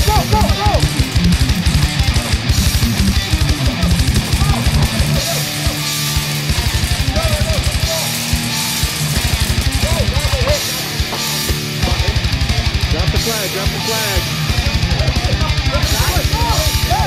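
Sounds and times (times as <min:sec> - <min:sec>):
distorted electric guitar: 0:00.0 - 0:17.0
rapid bass drum beat: 0:00.0 - 0:17.0.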